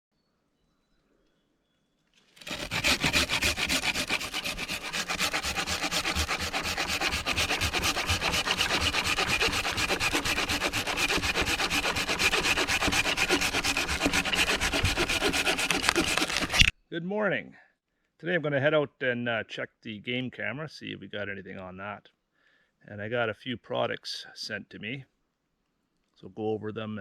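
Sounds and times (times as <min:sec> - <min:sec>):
hand saw rasping through wood: 0:02.4 - 0:16.7.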